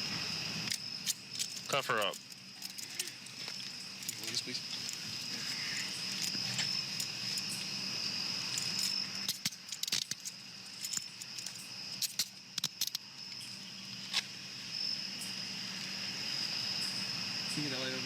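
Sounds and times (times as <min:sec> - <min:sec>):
crickets chirping: 0:00.0 - 0:18.0
sharp clicks and rattles: 0:00.7 - 0:05.3, 0:08.5 - 0:13.0.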